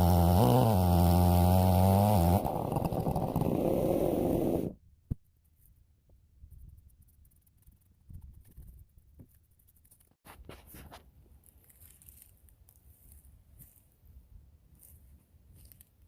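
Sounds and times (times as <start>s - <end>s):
chainsaw running: 0.0s - 4.8s.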